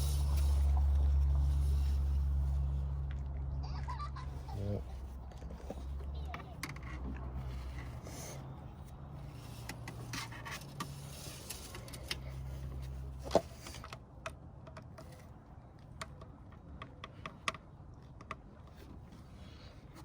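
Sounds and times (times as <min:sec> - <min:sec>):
handling clicks and rubbing: 0:00.0 - 0:03.2, 0:04.3 - 0:20.0
low hum: 0:00.0 - 0:06.6.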